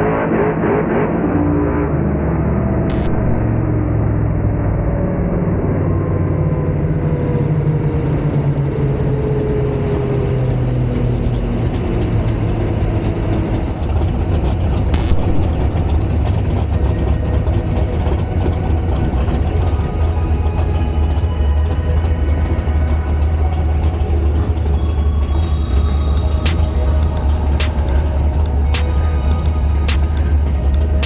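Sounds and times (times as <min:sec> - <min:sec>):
sharp click: 0:02.9 - 0:04.0, 0:15.0 - 0:16.2, 0:26.2 - 0:31.0.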